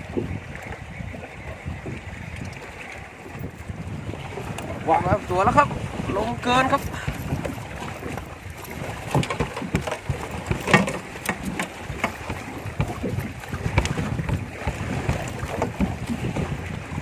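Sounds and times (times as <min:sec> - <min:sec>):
water splashes: 0:00.0 - 0:17.0
wind on microphone: 0:00.0 - 0:17.0
knocks on small boat: 0:06.4 - 0:17.0.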